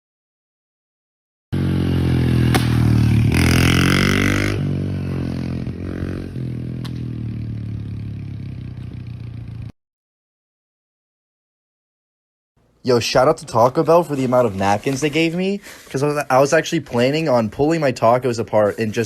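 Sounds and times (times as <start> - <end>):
loud scraping noise: 13.4 - 16.1.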